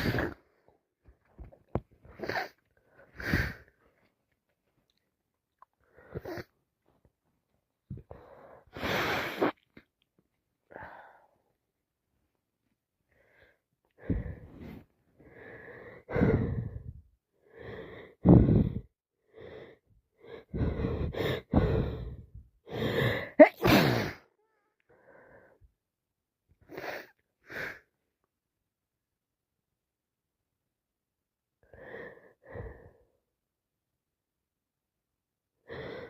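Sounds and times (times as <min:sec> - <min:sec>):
woman sneezing: 0:00.0 - 0:00.4, 0:23.4 - 0:24.3
woman wheezy breaths: 0:00.0 - 0:00.5, 0:02.0 - 0:04.1, 0:13.1 - 0:25.6, 0:31.6 - 0:33.2, 0:35.6 - 0:36.0.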